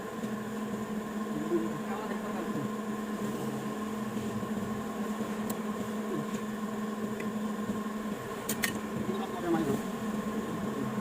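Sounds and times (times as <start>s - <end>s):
machine humming: 0.0s - 11.0s.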